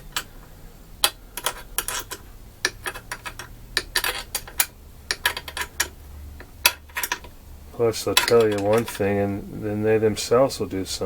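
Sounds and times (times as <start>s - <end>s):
metal parts and tools clinking: 0.0s - 7.4s, 8.0s - 9.2s.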